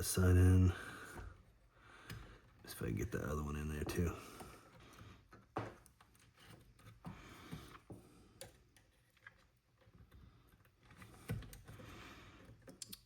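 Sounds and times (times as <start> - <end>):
faint sharp clicks of wires: 4.7 - 13.0.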